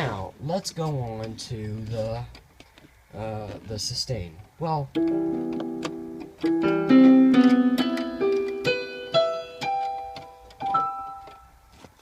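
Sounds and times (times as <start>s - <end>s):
keyboard piano notes: 4.8s - 11.8s.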